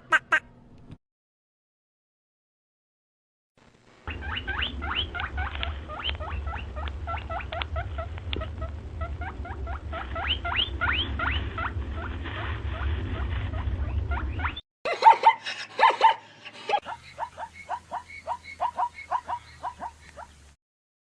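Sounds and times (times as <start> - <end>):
low steady hum: 3.6 - 14.6
small animal squeaking: 4.1 - 11.7.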